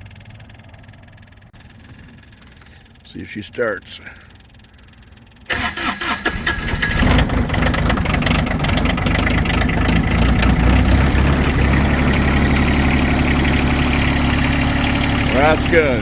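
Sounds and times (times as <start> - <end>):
engine idling: 0.0 - 16.0
engine starter cranking: 5.5 - 16.0.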